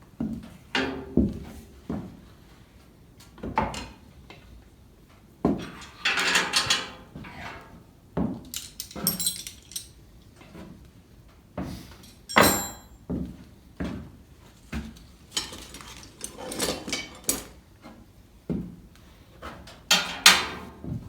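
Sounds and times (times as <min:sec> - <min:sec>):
metal parts clattering and scraping: 0:05.6 - 0:07.6, 0:08.4 - 0:10.0, 0:11.8 - 0:12.9, 0:15.0 - 0:17.6
ringing metal clanks: 0:12.1 - 0:13.0.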